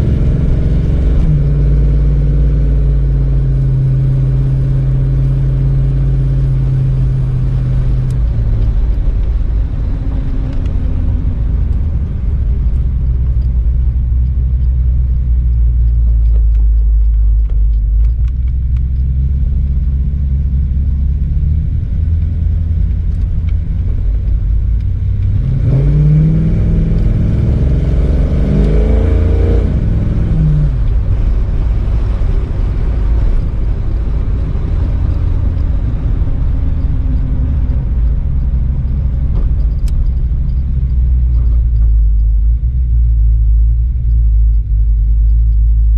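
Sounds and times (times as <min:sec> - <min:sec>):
car engine running and revving: 0:00.0 - 0:45.9.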